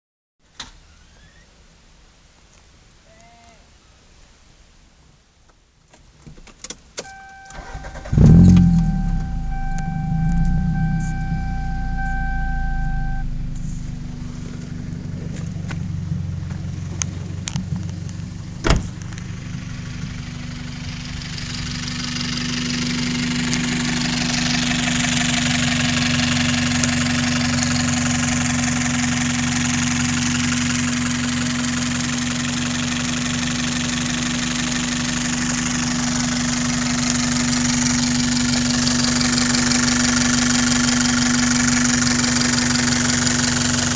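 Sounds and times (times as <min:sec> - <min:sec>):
car engine humming: 0:07.1 - 0:29.4.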